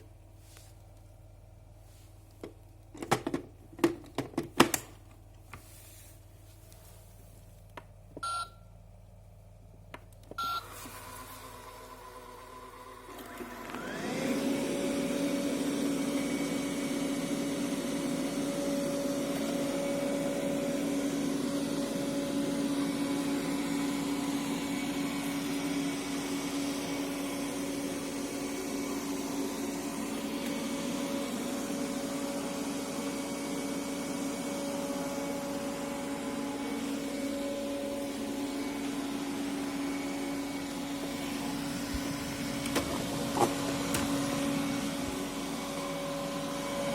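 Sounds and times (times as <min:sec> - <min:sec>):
robot vacuum cleaner motor whine: 0:10.6 - 0:46.9.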